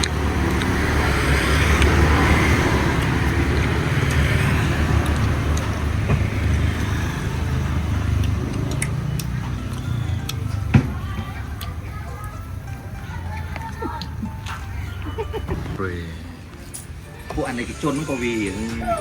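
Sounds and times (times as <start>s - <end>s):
vehicle engine running close by: 0.0s - 12.0s
steady low traffic hum: 0.0s - 19.0s.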